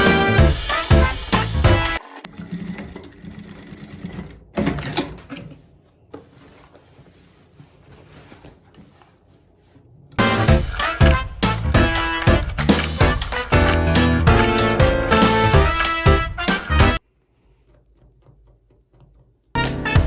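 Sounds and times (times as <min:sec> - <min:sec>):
sewing machine stitching: 0:01.4 - 0:05.1, 0:10.2 - 0:17.0.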